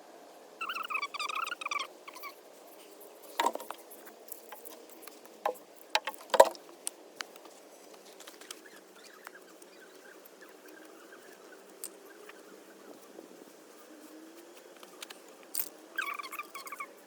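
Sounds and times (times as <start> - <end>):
hard objects clicking and knocking: 3.4 - 3.8, 5.4 - 6.6.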